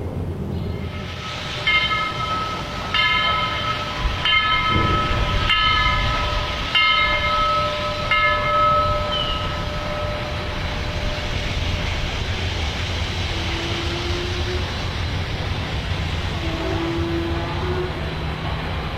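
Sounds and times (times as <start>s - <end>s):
low rumble of moving train: 0.0s - 18.9s
steam locomotive whistle blasts: 13.2s - 14.9s, 16.3s - 18.2s.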